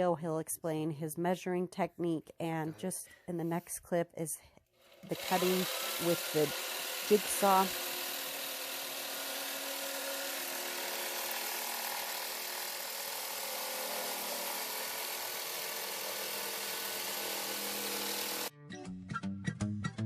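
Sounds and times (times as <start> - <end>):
jigsaw cutting wood plank: 4.8 - 18.5.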